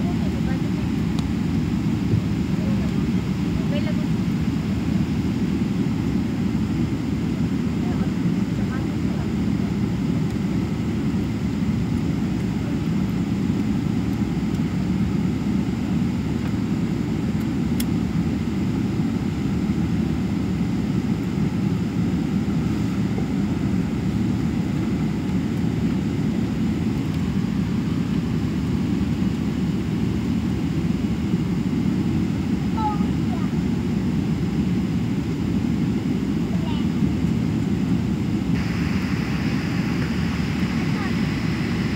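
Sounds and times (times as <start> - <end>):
airliner low rumble: 0.0 - 41.9.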